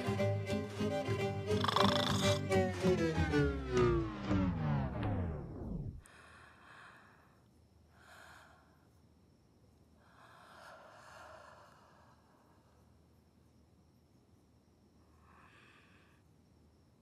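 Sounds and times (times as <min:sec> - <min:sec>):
music: 0:00.0 - 0:06.0
man snoring softly: 0:01.4 - 0:02.6.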